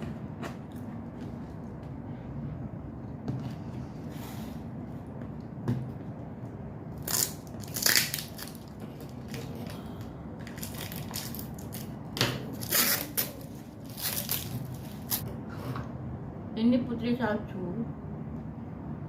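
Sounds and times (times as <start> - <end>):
cookies and packaging crunching: 6.9 - 15.2.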